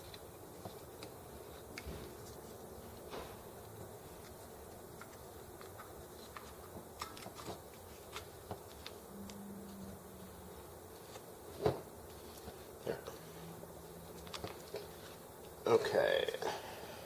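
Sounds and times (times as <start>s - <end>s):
low buzz: 9.0s - 11.5s.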